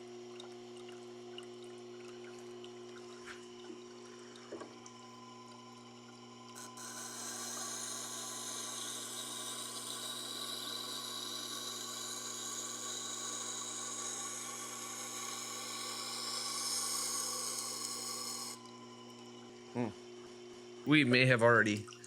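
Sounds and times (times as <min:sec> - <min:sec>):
grinding machine hum: 0:05.1 - 0:20.0
knife grinding on wheel: 0:06.6 - 0:18.7.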